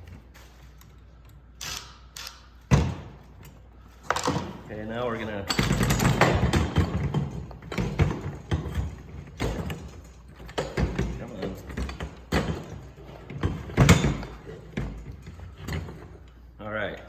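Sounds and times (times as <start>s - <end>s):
lawn roller parts knocking and scraping: 2.7s - 16.4s.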